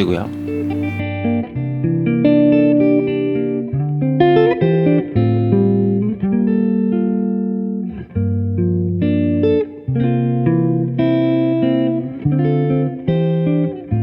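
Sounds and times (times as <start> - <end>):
bass notes: 0.0 - 1.0
plucked guitar melody: 0.0 - 14.0.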